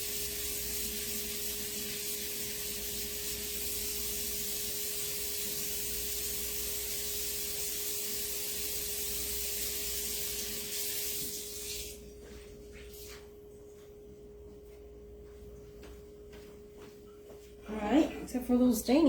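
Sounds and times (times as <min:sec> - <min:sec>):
tap water running: 0:00.0 - 0:12.1.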